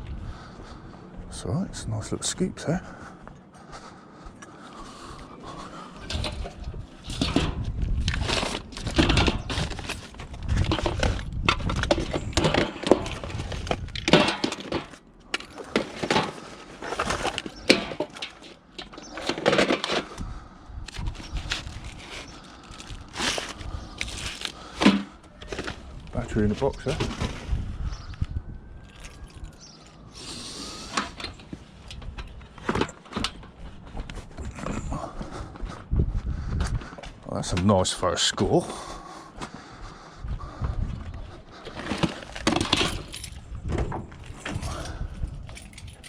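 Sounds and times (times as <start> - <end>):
scrap metal clanking: 6.0 - 20.2.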